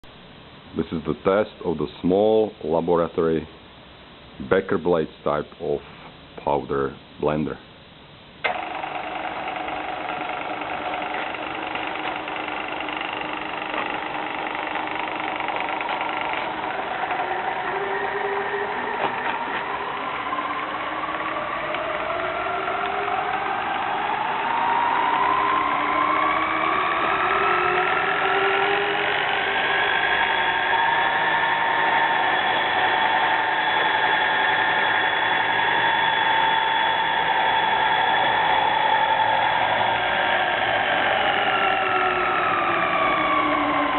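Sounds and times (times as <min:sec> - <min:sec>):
powder mixer motor whine: 0:08.4 - 0:43.9.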